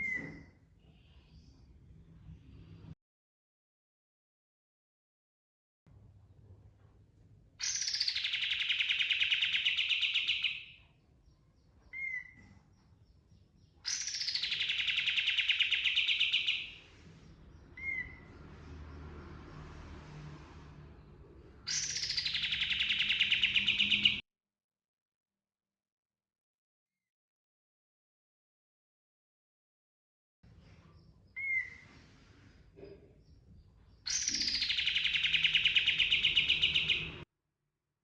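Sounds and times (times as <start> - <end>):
songbird singing: 7.6 - 19.4, 21.4 - 24.2, 33.1 - 37.2.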